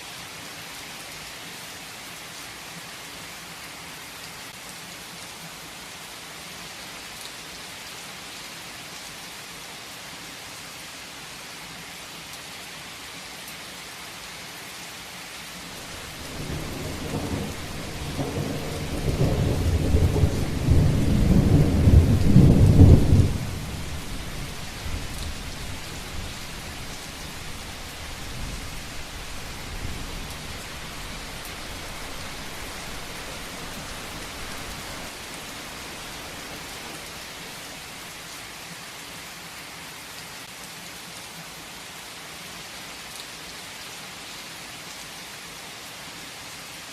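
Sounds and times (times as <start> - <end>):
heavy rain falling: 12.4 - 43.6
thunder rolling: 15.8 - 35.2.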